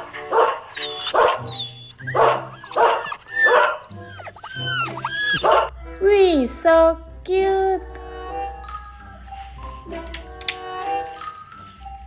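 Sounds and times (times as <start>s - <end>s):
dog barking: 0.0s - 5.7s
light background music: 0.0s - 12.0s.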